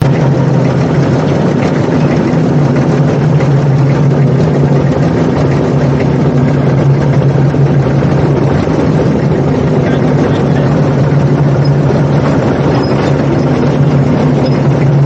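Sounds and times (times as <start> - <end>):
diesel engine humming: 0.0 - 15.0.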